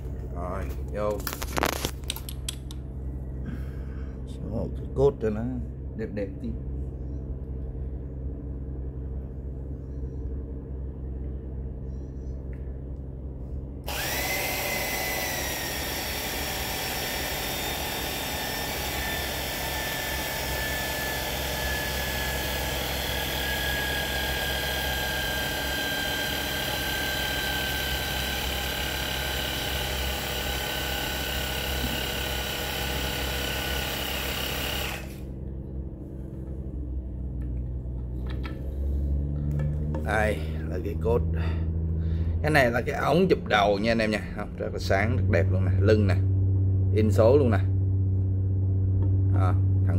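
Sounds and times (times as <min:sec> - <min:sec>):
steady low hum: 0:00.0 - 0:49.9
hydraulic pump motor whine: 0:13.8 - 0:36.4.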